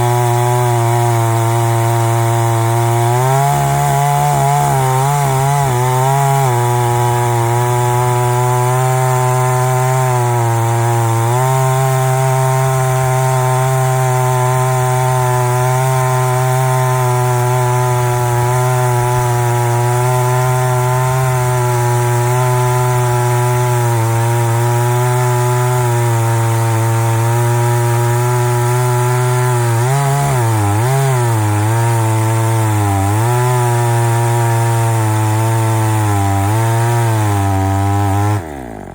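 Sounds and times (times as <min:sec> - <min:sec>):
chainsaw ripping through log: 0:00.0 - 0:38.9.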